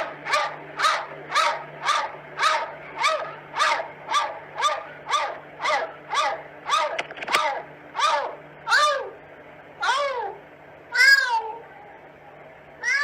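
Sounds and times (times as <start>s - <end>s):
dog barking: 0.0s - 9.2s.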